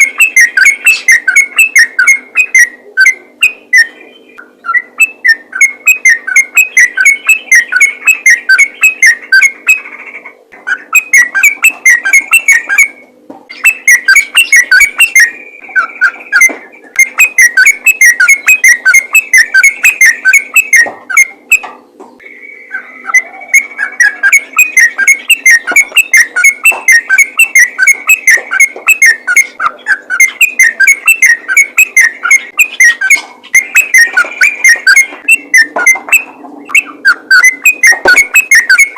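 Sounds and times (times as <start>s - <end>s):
bird singing bubbling notes: 0.0s - 38.9s.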